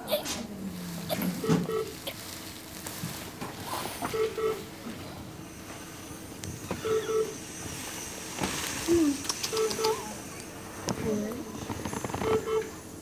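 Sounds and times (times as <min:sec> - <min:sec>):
medical monitor double beep: 0:01.4 - 0:02.0, 0:04.0 - 0:04.6, 0:06.8 - 0:07.4, 0:12.2 - 0:12.8.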